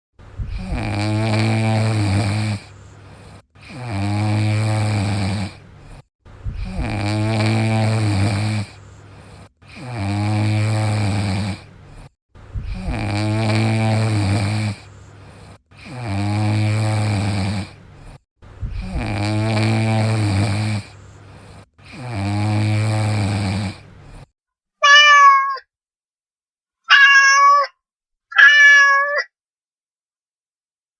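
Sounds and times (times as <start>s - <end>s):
cat snoring: 0.4s - 24.3s.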